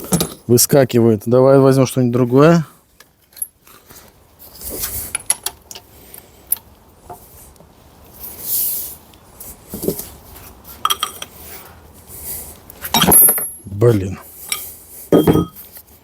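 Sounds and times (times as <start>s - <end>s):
metal tools clinking: 10.8s - 11.4s, 12.9s - 13.7s, 14.4s - 15.7s.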